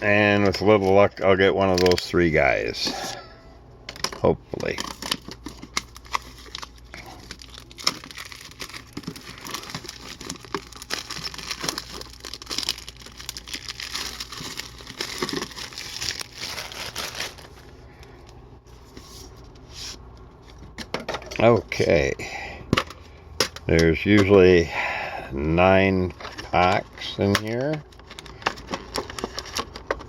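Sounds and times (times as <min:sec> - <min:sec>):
plastic wrapping crinkling and tearing: 0:04.6 - 0:17.8.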